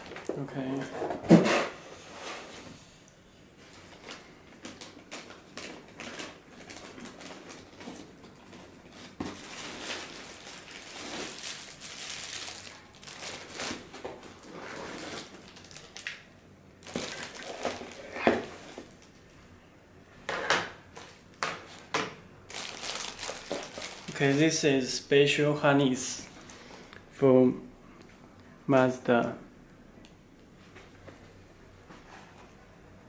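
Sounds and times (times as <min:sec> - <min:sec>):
plastic packaging crinkling: 0:03.6 - 0:19.2, 0:22.5 - 0:24.6.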